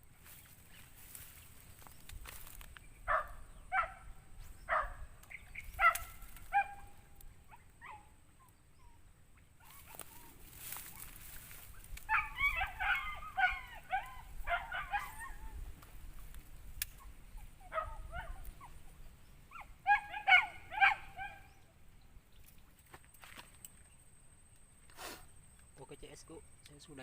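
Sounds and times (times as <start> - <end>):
animal calling: 3.1 - 15.8, 16.9 - 21.8.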